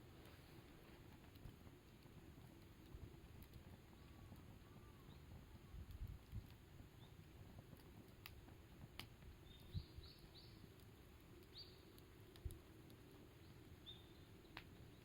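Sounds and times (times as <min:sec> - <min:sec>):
campfire crackling and popping: 0:00.0 - 0:15.0
bird chirping: 0:09.4 - 0:10.6, 0:11.5 - 0:11.9, 0:13.4 - 0:15.0.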